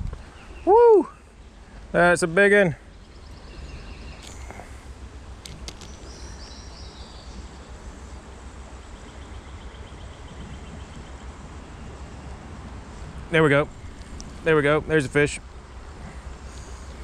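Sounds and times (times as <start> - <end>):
steady low rumble: 0.0 - 17.0
insects chirping in trills: 2.4 - 14.3.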